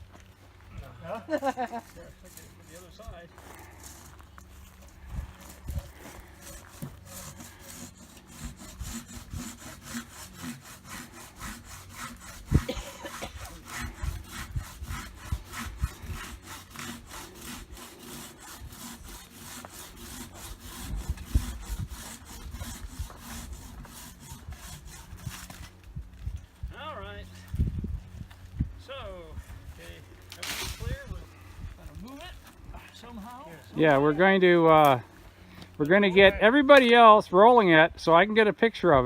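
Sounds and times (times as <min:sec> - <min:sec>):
hand saw cutting wood: 0:01.4 - 0:25.8, 0:30.2 - 0:31.2.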